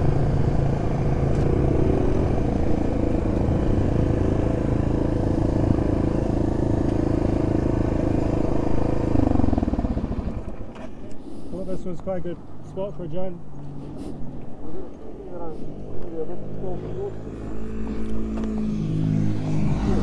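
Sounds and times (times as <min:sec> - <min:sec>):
motorbike engine running: 0:00.0 - 0:10.6.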